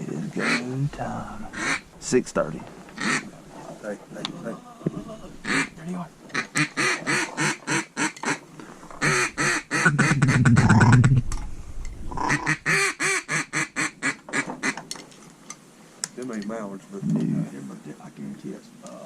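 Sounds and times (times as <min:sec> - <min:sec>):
duck call quacks: 0:01.5 - 0:01.8, 0:03.0 - 0:03.3, 0:05.4 - 0:08.4, 0:09.0 - 0:11.0, 0:12.2 - 0:14.8
duck call rolling chatter: 0:01.5 - 0:01.8, 0:03.0 - 0:03.3, 0:05.2 - 0:08.4, 0:09.0 - 0:11.0, 0:12.2 - 0:14.8.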